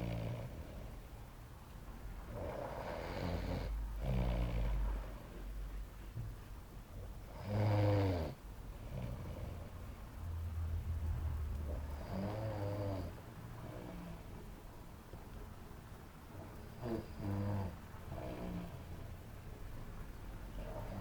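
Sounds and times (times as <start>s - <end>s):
man snoring: 2.4s - 4.7s, 7.4s - 9.6s, 12.0s - 13.1s, 16.8s - 18.7s.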